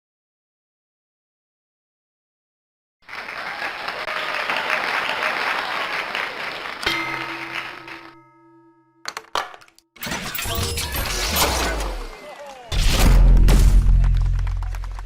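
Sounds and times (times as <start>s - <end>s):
applause: 3.0s - 8.2s, 14.0s - 15.0s
struck musical chord ringing: 6.9s - 9.0s.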